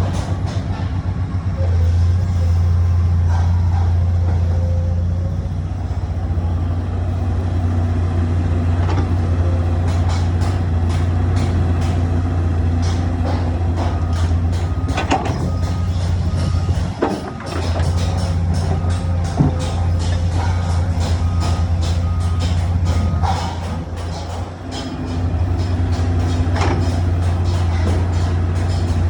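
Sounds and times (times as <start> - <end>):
knocks and clanks: 0.0 - 1.1, 8.7 - 29.0
excavator engine droning: 0.0 - 29.0.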